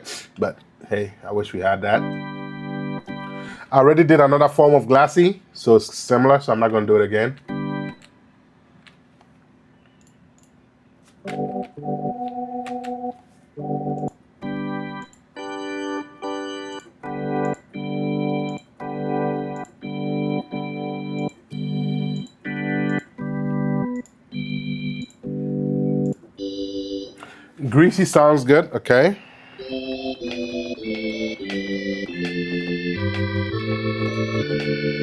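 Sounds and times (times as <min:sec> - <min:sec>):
synthesizer organ chords: 0:01.4 - 0:05.2, 0:07.4 - 0:08.1, 0:11.2 - 0:35.0.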